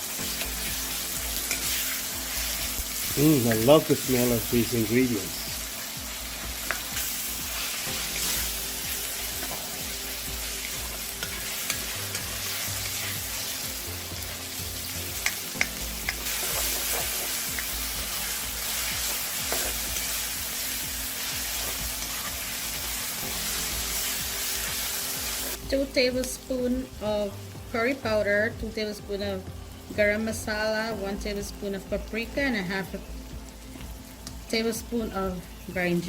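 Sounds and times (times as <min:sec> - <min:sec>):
vegetables sizzling in hot oil: 0:00.0 - 0:36.0.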